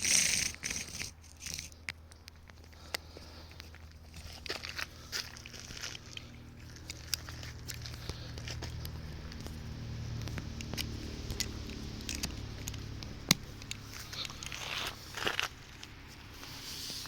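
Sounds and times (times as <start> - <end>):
gear clicks and rustling: 0.0 - 17.0.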